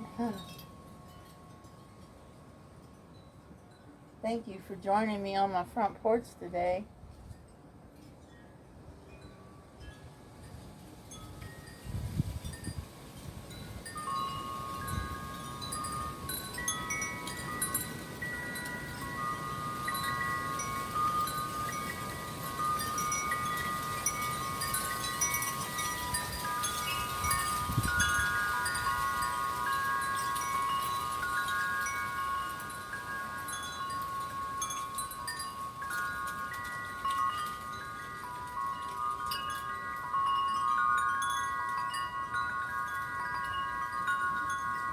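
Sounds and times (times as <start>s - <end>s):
wind chimes ringing: 0.0s - 4.3s, 4.9s - 44.9s
wind rumble on microphone: 10.4s - 44.9s.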